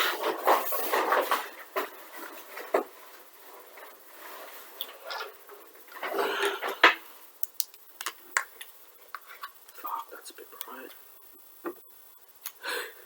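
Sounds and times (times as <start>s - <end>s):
objects being moved and set down: 0.0s - 7.2s
rustling: 0.0s - 7.3s.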